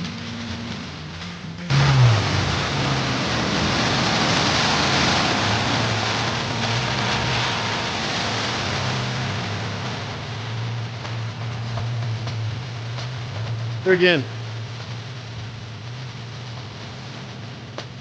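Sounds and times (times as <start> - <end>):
loud even hiss: 0.0 - 18.0
off-road vehicle engine running: 0.0 - 18.0.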